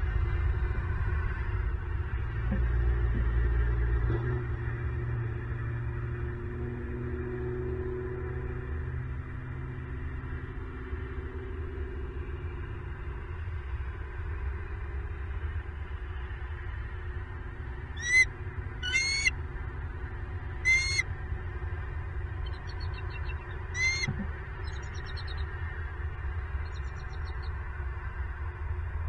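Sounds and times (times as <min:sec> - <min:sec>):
low rumble: 0:13.7 - 0:29.0
eagle calling: 0:18.0 - 0:19.3, 0:20.6 - 0:21.0, 0:22.5 - 0:25.4.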